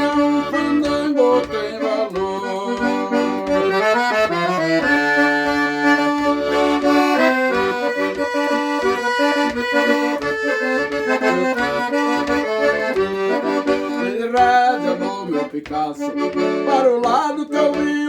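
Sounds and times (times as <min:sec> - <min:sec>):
accordion folk melody: 0:00.0 - 0:18.0.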